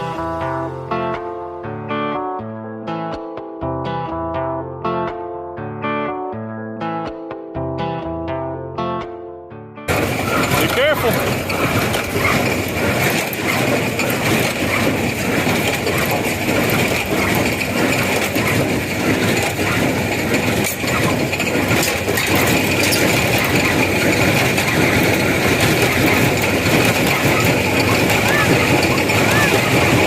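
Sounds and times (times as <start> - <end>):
baler mechanical din: 9.9 - 30.0
mechanical knocks: 9.9 - 30.0
tractor engine running: 9.9 - 30.0.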